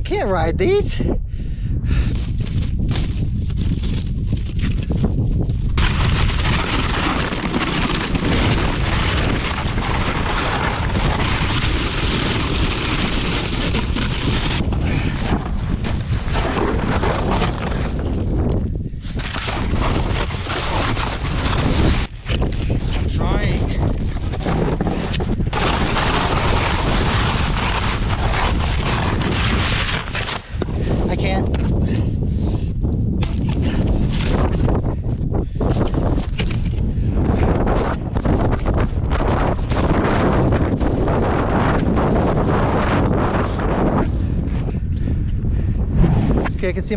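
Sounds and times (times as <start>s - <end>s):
wind buffeting microphone: 0.0s - 46.9s
snowboard scraping on icy snow: 5.8s - 14.6s.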